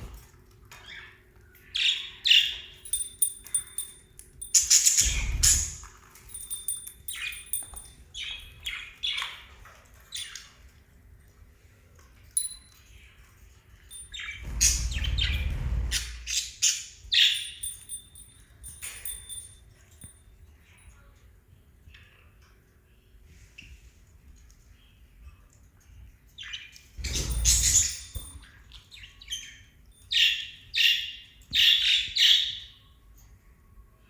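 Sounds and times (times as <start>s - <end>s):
parrots chirping: 1.9s - 9.3s, 13.9s - 20.1s.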